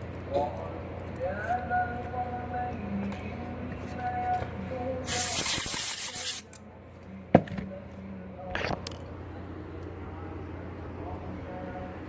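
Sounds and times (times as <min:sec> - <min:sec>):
low steady hum: 0:00.0 - 0:12.0
loud hiss: 0:05.1 - 0:06.4.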